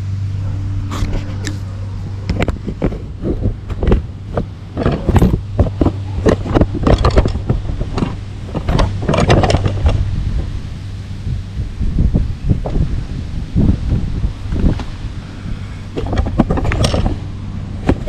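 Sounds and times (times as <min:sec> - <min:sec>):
handling knocks and rattles: 0:01.0 - 0:10.6, 0:15.9 - 0:18.0.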